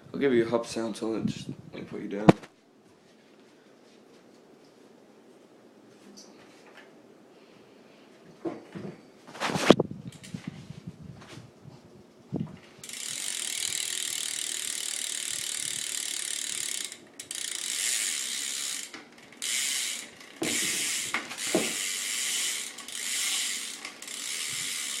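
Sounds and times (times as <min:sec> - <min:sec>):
bicycle hub ratcheting buzz: 0:12.8 - 0:25.0
thump: 0:20.4 - 0:20.8, 0:21.5 - 0:21.8
knocks: 0:21.5 - 0:21.8.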